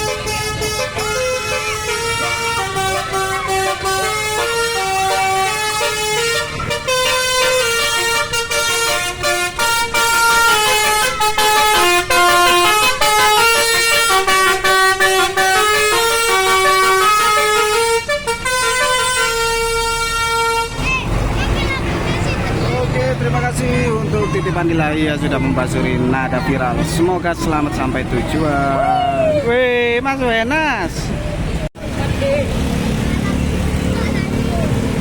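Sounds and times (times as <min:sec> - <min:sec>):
bus horn playing a melody: 0:00.0 - 0:20.9.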